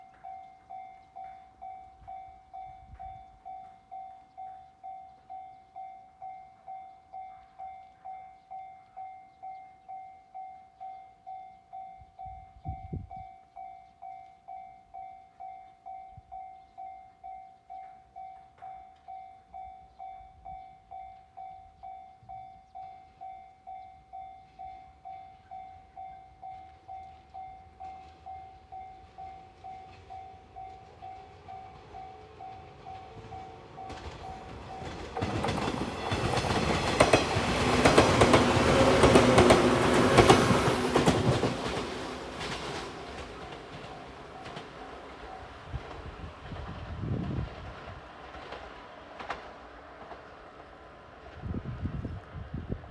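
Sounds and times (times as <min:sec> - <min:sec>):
level crossing warning bell: 0:00.0 - 0:46.2.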